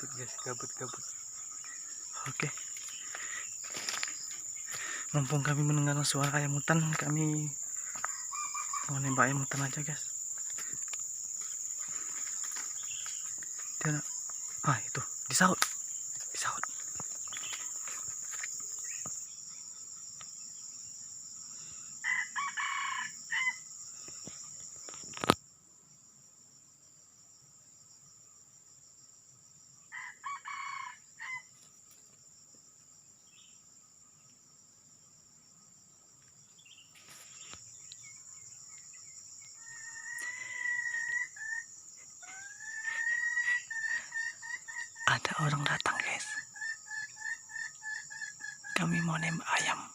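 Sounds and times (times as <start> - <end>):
high insect drone: 0.0 - 49.9
junglefowl crowing: 4.6 - 10.9, 22.0 - 23.7, 29.9 - 31.5, 39.6 - 49.0.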